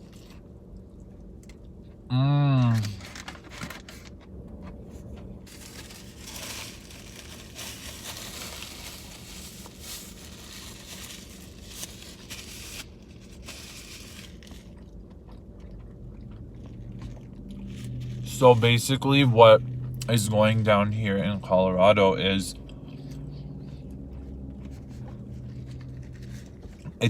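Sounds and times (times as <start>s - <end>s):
sandwich wrapper crinkling: 5.2s - 15.0s, 24.8s - 26.9s
chewing: 14.3s - 18.2s, 22.6s - 26.9s.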